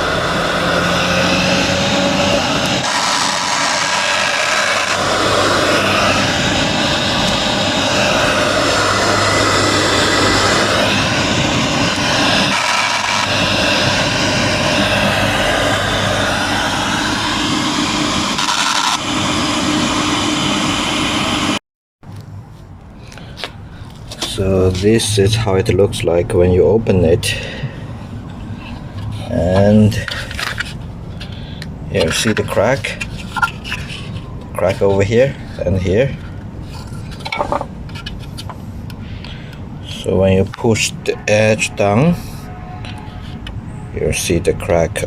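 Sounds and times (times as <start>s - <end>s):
fan wheel rubbing and scraping: 0.0s - 20.0s, 28.1s - 39.0s
motor humming: 0.0s - 21.6s.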